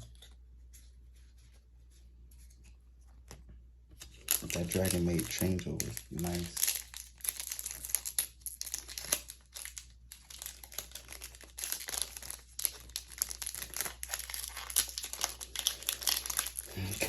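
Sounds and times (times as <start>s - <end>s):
foil wrapper crinkling and tearing: 4.0s - 17.0s.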